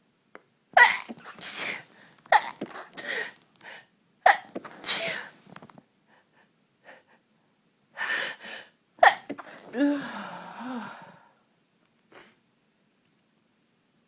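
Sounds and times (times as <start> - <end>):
woman sneezing: 0.8 - 3.3, 4.3 - 5.4, 9.0 - 10.4.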